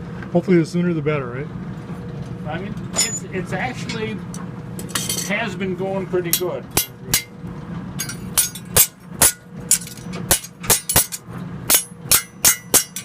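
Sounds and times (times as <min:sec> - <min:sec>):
hammer striking metal on anvil: 0:06.3 - 0:07.4, 0:08.0 - 0:13.0.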